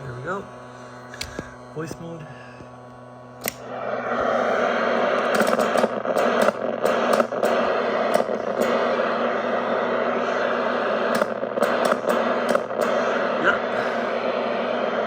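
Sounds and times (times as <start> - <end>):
radio hiss and hum: 0.0 - 15.0
press-to-talk switch clicks: 3.4 - 3.6.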